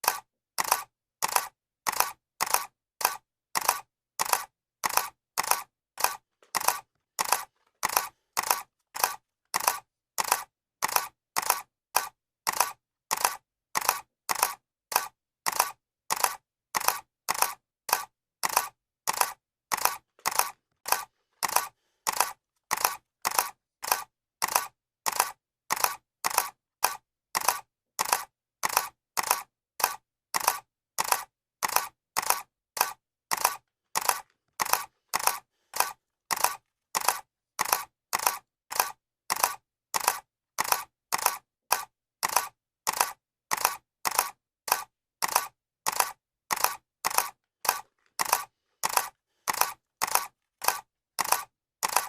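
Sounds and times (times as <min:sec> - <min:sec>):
camera shutter clicking: 0:00.0 - 0:52.0.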